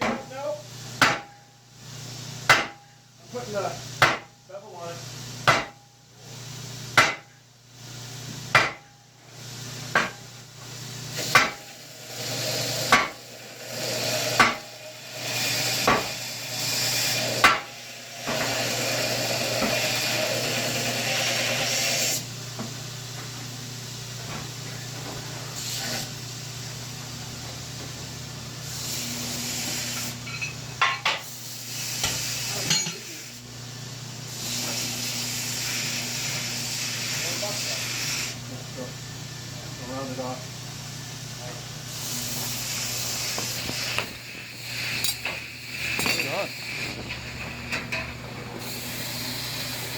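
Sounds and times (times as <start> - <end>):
hammer striking steel on anvil: 0.0 - 0.3, 1.0 - 1.5, 2.5 - 2.9, 4.0 - 4.4, 5.4 - 5.9, 7.0 - 7.3, 8.5 - 9.0, 9.9 - 10.2, 11.2 - 11.6, 12.9 - 13.2, 14.4 - 14.7, 15.8 - 16.2, 17.4 - 17.7, 32.0 - 33.2.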